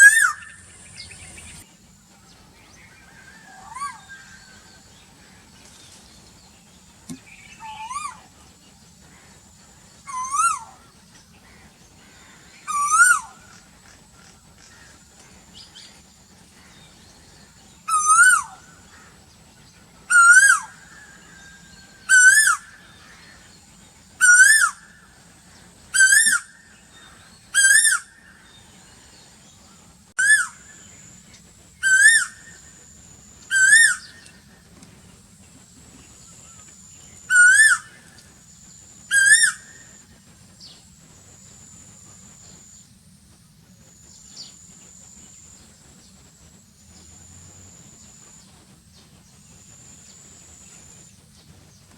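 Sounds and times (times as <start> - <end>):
bird calling: 0.0 - 1.6, 7.1 - 8.4, 10.0 - 15.9, 17.9 - 19.2, 20.1 - 23.5, 24.2 - 29.0, 29.7 - 30.9, 31.8 - 32.7, 33.5 - 34.6, 36.0 - 38.3, 39.1 - 40.0.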